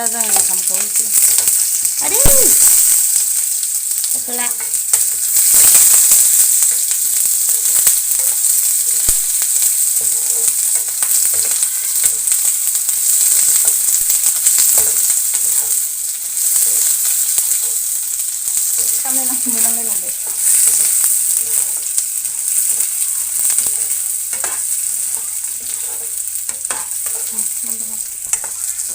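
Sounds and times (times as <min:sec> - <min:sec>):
rice sizzling in hot oil: 0:00.0 - 0:28.9
stirring clicks and scrapes: 0:18.8 - 0:28.9.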